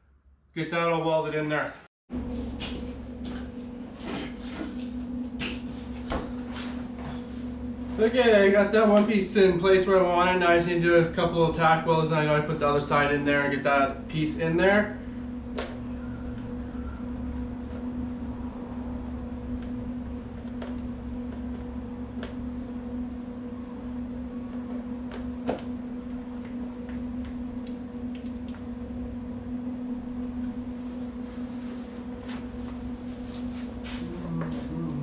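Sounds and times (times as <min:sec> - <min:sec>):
electrical machine hum: 0:00.0 - 0:35.0.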